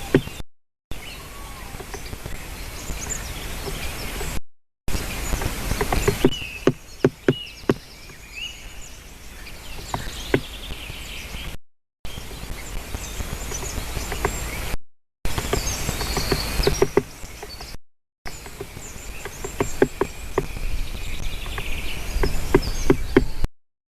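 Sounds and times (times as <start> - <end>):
woodpecker knocking on wood: 0.0 - 0.4, 5.4 - 8.2, 9.8 - 10.6, 15.3 - 20.6, 21.5 - 23.4
outdoor background noise: 0.0 - 23.5.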